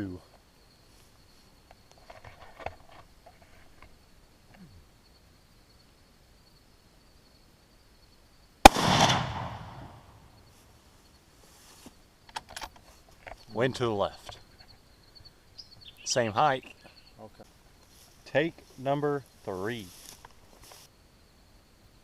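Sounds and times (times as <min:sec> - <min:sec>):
rifle shot: 0:08.6 - 0:10.3.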